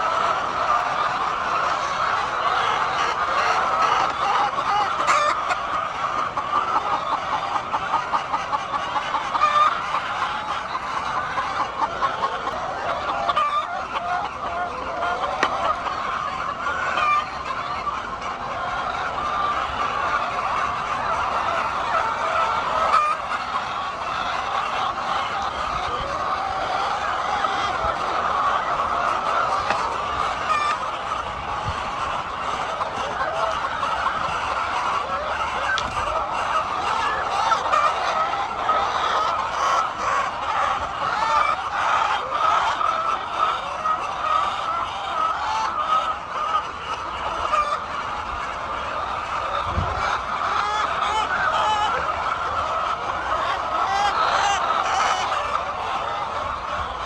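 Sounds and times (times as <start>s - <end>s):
chickens clucking: 0.0s - 57.0s.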